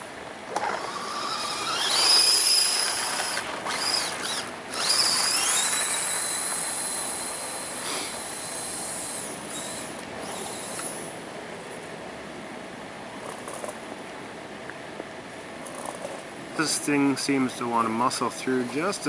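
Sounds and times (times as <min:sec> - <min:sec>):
electric motor and gearbox whining: 0:00.5 - 0:11.2, 0:18.4 - 0:19.0.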